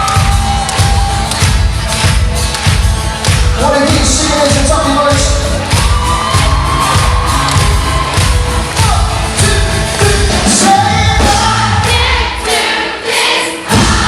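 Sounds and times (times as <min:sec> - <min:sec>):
steady drum beat: 0:00.0 - 0:12.2, 0:13.7 - 0:14.0
pop-rock band playing: 0:00.0 - 0:12.4
person singing: 0:08.8 - 0:12.6.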